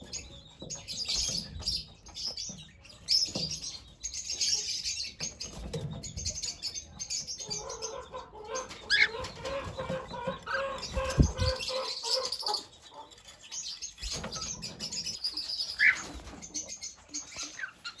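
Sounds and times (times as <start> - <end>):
cockatiel chirping: 15.6 - 16.1.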